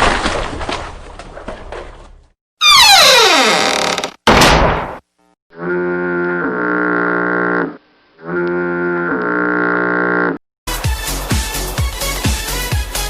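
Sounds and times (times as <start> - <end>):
loud slam: 4.2 - 5.1.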